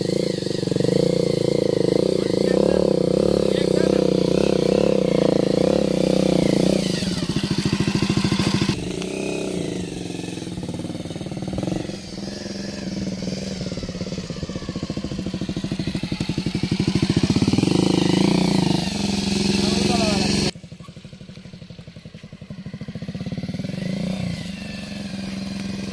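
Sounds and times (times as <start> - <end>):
motorcycle engine revving: 0.0 - 25.9.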